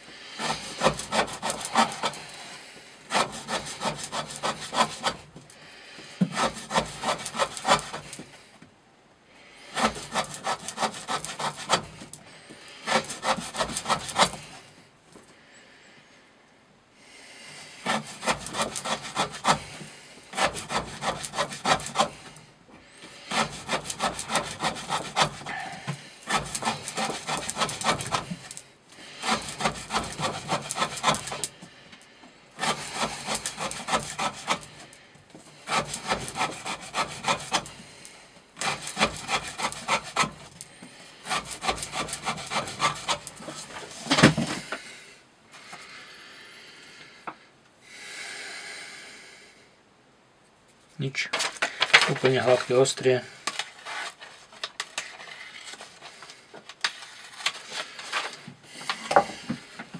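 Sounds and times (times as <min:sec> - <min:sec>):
knife slicing through rope: 0:00.4 - 0:02.4, 0:03.1 - 0:05.2, 0:06.3 - 0:08.2, 0:09.7 - 0:12.1, 0:12.8 - 0:14.6, 0:17.9 - 0:22.3, 0:23.3 - 0:28.6, 0:29.2 - 0:31.6, 0:32.6 - 0:34.8, 0:35.7 - 0:37.8, 0:38.6 - 0:40.6, 0:41.2 - 0:44.4.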